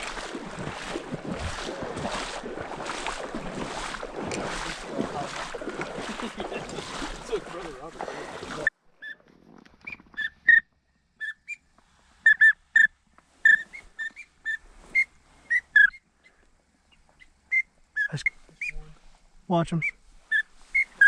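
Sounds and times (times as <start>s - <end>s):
duck whistle call peeps: 9.9s - 11.6s, 12.2s - 16.0s, 17.5s - 18.8s.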